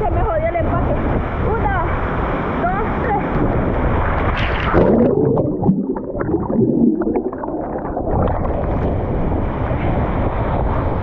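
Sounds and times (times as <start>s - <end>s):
underwater bubbling and gurgling: 3.3s - 10.9s
splash into water: 4.2s - 8.8s.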